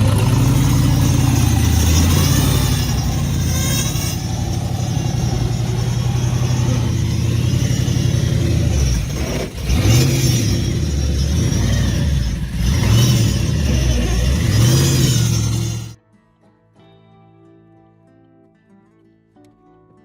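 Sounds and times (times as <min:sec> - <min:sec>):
race car engine idling and revving: 0:00.0 - 0:16.0.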